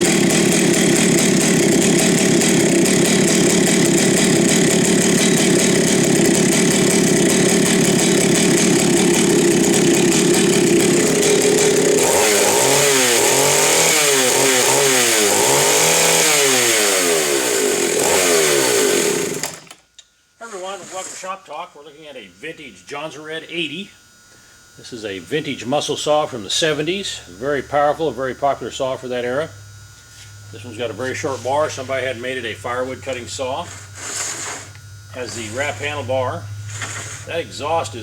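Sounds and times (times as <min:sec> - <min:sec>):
chainsaw engine revving: 0:00.0 - 0:19.8, 0:20.4 - 0:21.6, 0:30.4 - 0:38.0.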